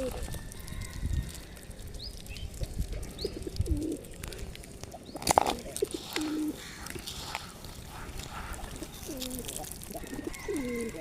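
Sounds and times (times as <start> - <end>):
pigeons cooing: 0.0 - 0.6, 3.0 - 11.0
small birds chirping: 0.0 - 11.0.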